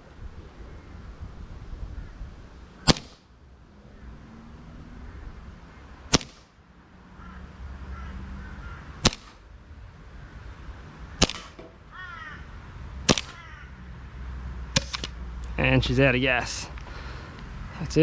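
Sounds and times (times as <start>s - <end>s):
gel blaster pistol shots: 2.8s - 3.2s, 6.1s - 6.5s, 9.0s - 9.4s, 11.2s - 11.6s, 13.1s - 13.4s
bird calling: 7.2s - 9.1s, 11.3s - 12.5s, 13.2s - 13.8s.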